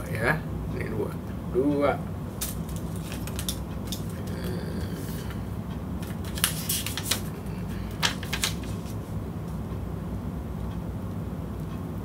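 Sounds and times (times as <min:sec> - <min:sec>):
steady low rumble: 0:00.0 - 0:12.0
packaging crinkles and clicks: 0:02.4 - 0:04.2, 0:06.0 - 0:07.3, 0:07.9 - 0:08.8.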